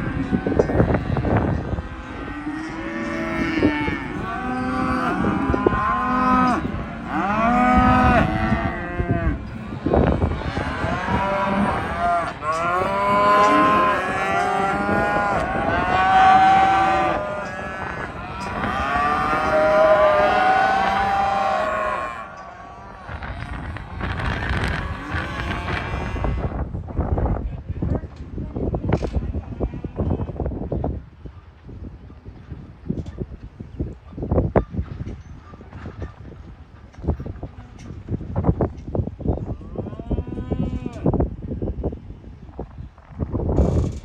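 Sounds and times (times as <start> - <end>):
cattle mooing and bellowing: 0.0 - 26.6.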